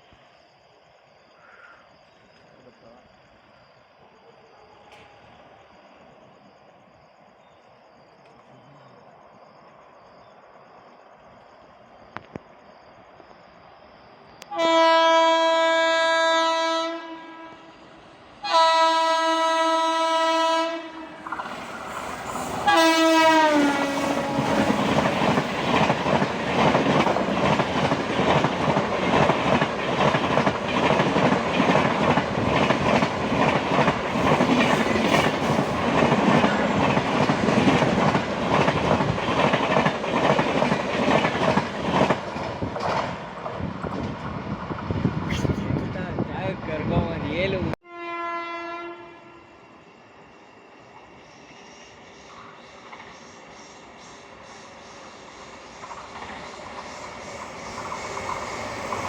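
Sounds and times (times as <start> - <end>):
train rumbling past: 2.0 - 59.0
train horn blasts: 14.5 - 17.7, 18.4 - 21.2, 22.6 - 24.9, 47.8 - 49.6
wheels clacking over rail joints: 24.2 - 45.0.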